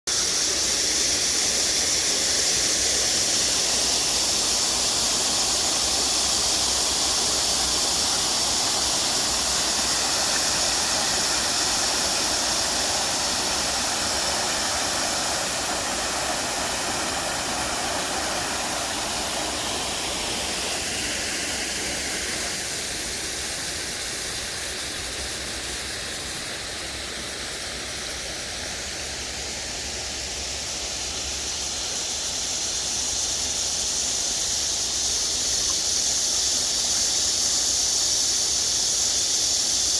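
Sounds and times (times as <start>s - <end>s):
stream rushing over rocks: 0.1s - 30.7s.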